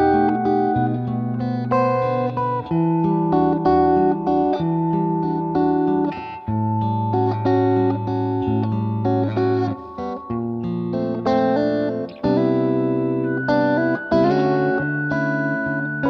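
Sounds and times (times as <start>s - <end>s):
guitar music: 0.0s - 16.0s.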